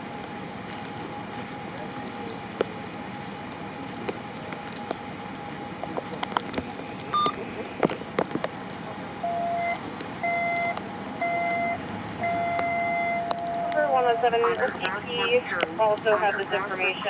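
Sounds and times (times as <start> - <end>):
traffic noise hum: 0.0 - 17.0
repeating mid-pitched beep: 7.2 - 7.4.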